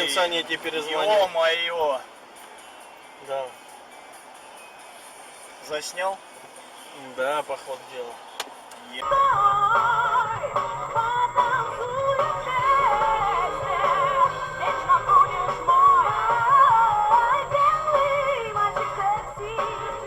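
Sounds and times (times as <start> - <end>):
music with sung vocal melody: 8.2 - 20.0.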